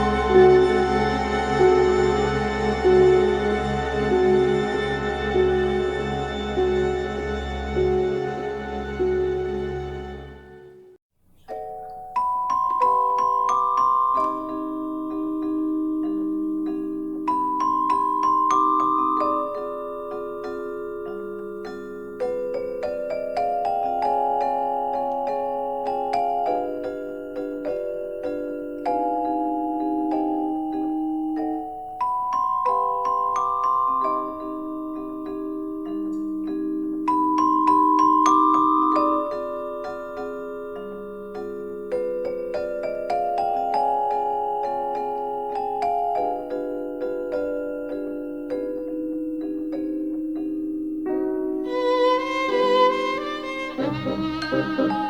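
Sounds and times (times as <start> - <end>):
mallet percussion notes: 0.0 - 9.9, 11.4 - 55.0
sustained chords: 0.0 - 10.7, 51.7 - 55.0.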